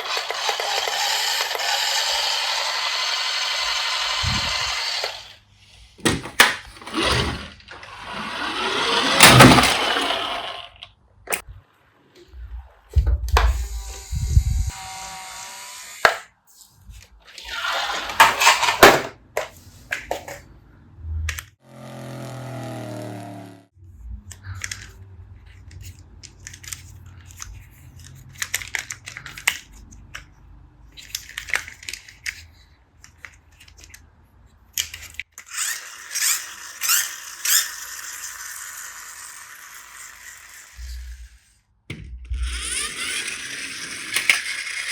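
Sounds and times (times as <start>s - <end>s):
plastic toy vehicles clicking: 0.0s - 5.3s, 24.3s - 34.1s, 34.7s - 40.9s, 42.4s - 44.9s.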